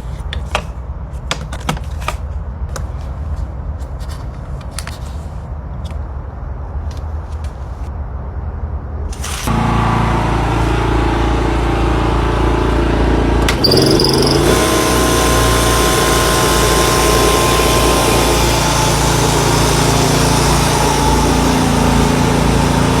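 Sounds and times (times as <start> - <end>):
generator engine running: 9.5 - 23.0
short high tone: 13.6 - 14.6.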